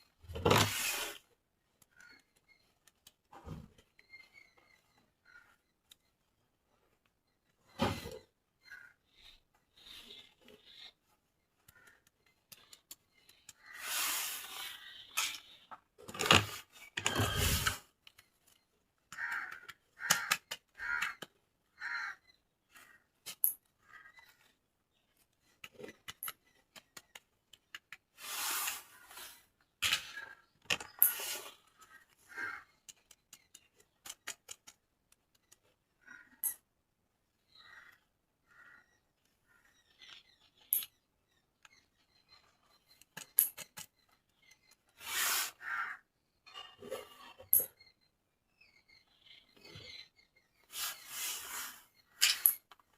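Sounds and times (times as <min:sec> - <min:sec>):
clicks and taps: 0:25.5 - 0:28.1, 0:32.8 - 0:35.8.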